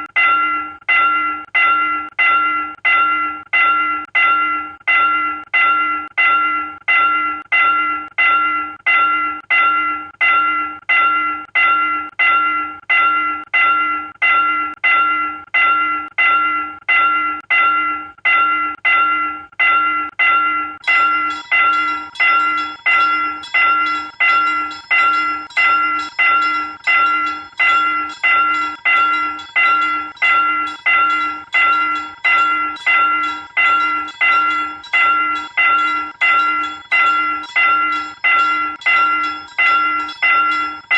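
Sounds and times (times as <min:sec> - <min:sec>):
railroad crossing bell ringing: 0:00.0 - 0:40.9
higher-pitched ringing: 0:20.8 - 0:40.9.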